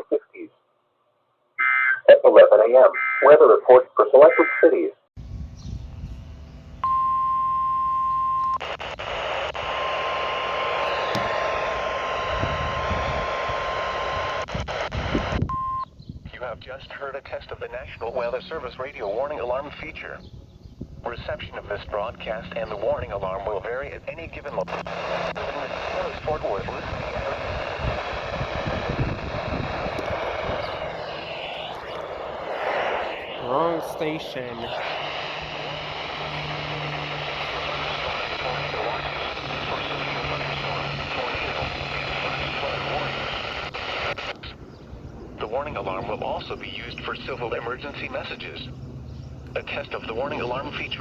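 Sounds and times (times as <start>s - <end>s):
static hiss: 8.5s - 15.5s, 21.0s - 44.6s, 45.4s - 48.7s
clicks: 10.6s - 11.7s
steady alarm tone: 24.6s - 41.0s.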